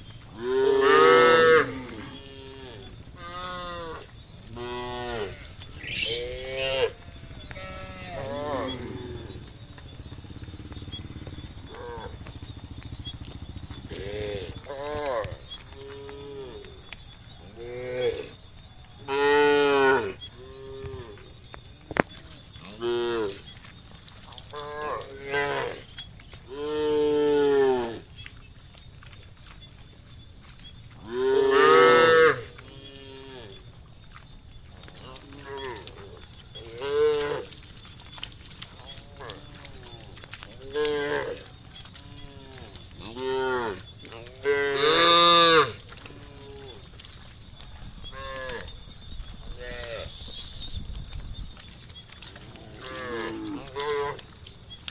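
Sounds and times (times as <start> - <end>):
cows mooing: 0.3 - 9.6, 31.0 - 33.6, 36.6 - 37.6, 38.8 - 47.0, 52.4 - 54.4.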